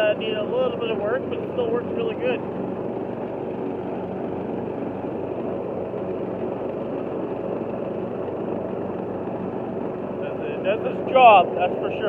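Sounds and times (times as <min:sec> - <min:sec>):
lawn mower engine running: 0:00.0 - 0:12.0.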